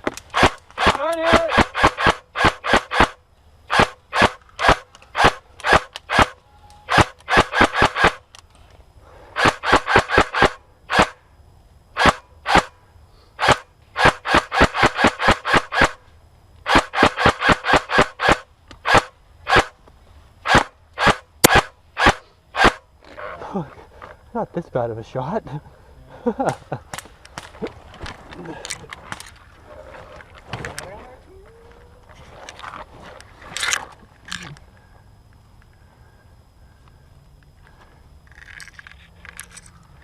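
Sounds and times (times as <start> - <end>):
airsoft gun shots snapping: 0.0 - 8.4, 9.4 - 11.2, 12.0 - 12.8, 13.4 - 16.0, 16.6 - 19.8, 20.4 - 22.8.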